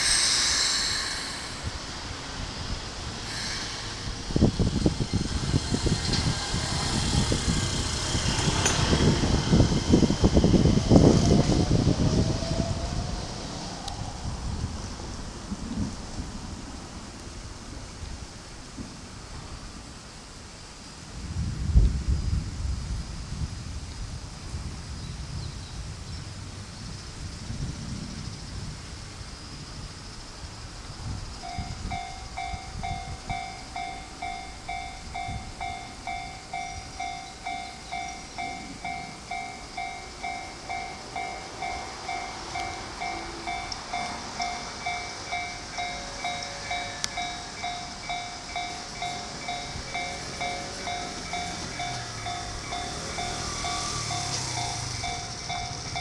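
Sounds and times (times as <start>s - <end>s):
wind noise on microphone: 0.0s - 20.1s, 20.9s - 56.0s
approaching train: 0.0s - 56.0s
level crossing warning bell: 31.4s - 56.0s.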